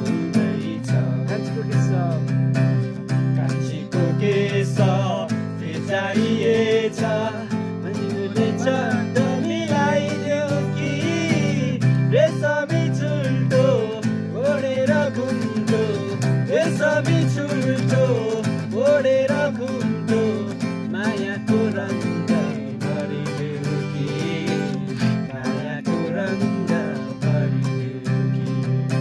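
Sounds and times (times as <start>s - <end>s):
acoustic guitar music: 0.0s - 29.0s.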